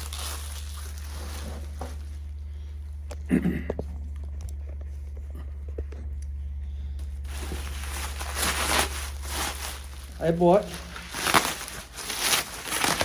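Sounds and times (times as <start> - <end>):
plastic packing crinkling: 0.0 - 2.5, 7.0 - 13.0
low steady hum: 0.0 - 13.0.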